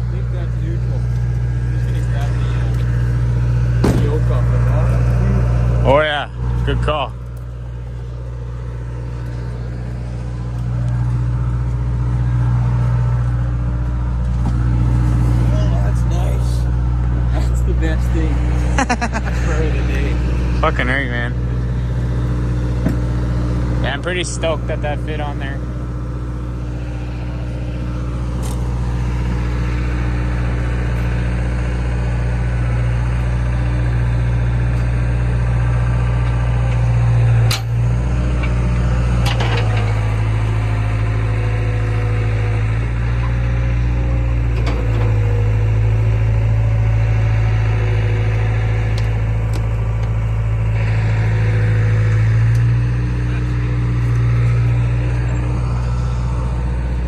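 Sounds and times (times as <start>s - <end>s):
vehicle engine running: 0.0s - 57.0s
sharp knock: 3.8s - 4.2s.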